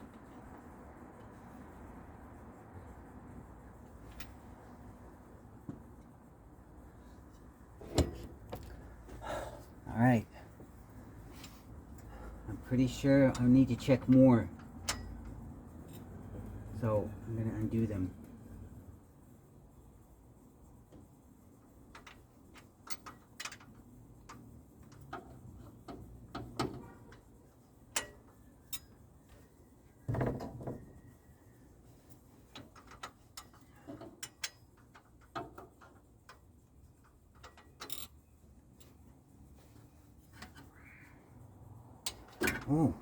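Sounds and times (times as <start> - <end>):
hand tools clicking on engine: 11.9 - 16.2, 21.8 - 29.0, 32.1 - 38.2, 41.8 - 43.0.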